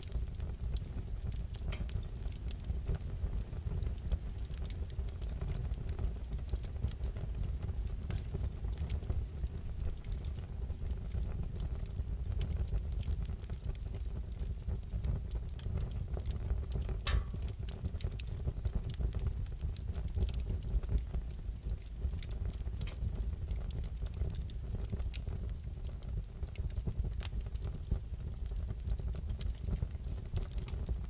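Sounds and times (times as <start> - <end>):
wood fire crackling: 0.0 - 31.0.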